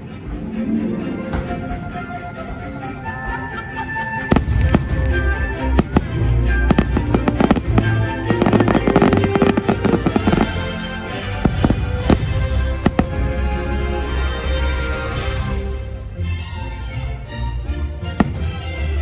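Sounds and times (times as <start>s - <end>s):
fireworks bangs: 4.3s - 7.8s, 11.4s - 13.4s
low rumble: 4.3s - 17.2s.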